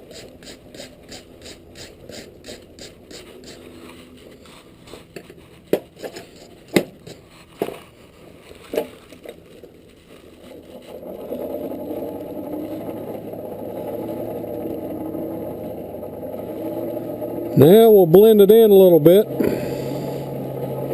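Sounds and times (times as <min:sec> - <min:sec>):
forge roaring: 0:10.3 - 0:20.9.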